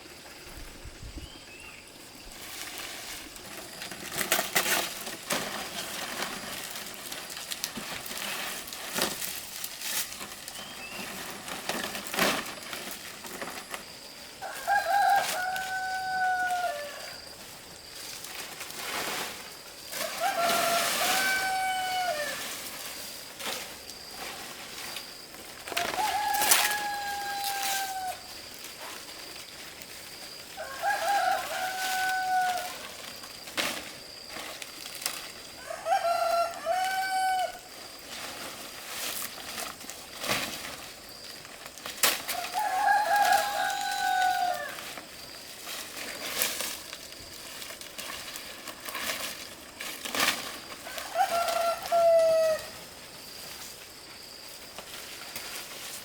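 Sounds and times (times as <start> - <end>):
roosters crowing: 13.8 - 18.5, 19.1 - 22.9, 25.5 - 33.3, 35.3 - 38.0, 42.1 - 45.4, 48.6 - 53.3.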